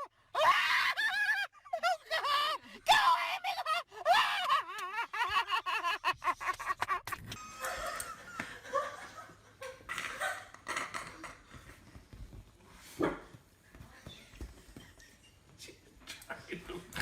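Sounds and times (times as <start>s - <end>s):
woman giggling: 4.7s - 10.5s.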